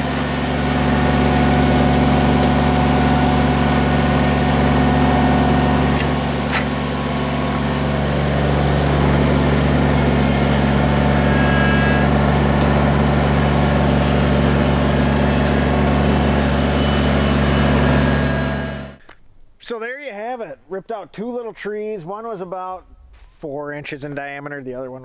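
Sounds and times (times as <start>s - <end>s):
tractor diesel engine running: 0.0s - 19.0s
sharp clicks: 6.0s - 6.8s.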